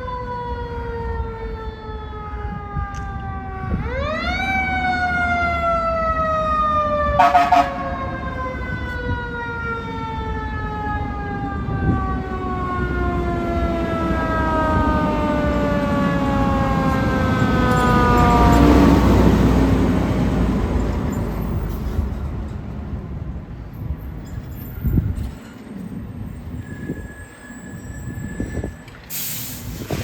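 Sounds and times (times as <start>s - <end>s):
fire engine siren wailing: 0.0s - 22.3s
truck engine: 4.6s - 24.4s.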